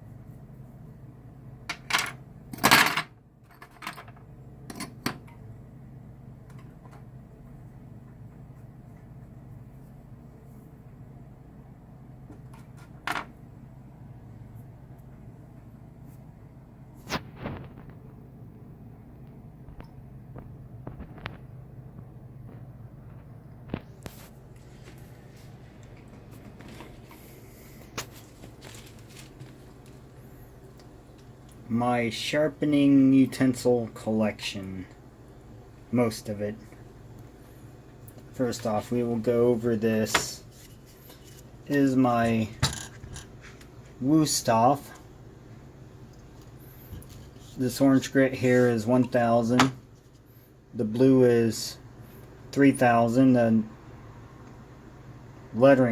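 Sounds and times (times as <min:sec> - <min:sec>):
steady low hum: 0:00.0 - 0:55.9
objects rustling and knocking: 0:17.0 - 0:18.2, 0:19.6 - 0:30.2.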